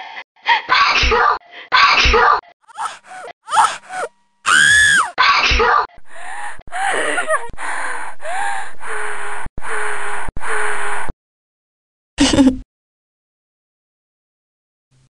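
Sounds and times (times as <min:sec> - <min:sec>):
breathy hissing breaths: 0:06.0 - 0:10.2
high-pitched squeal: 0:08.2 - 0:11.1.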